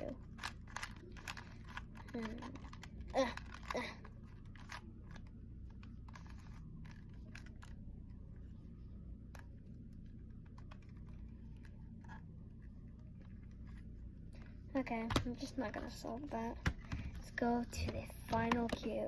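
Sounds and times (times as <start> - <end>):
puzzle cube clicking as twisted: 0.0 - 3.8.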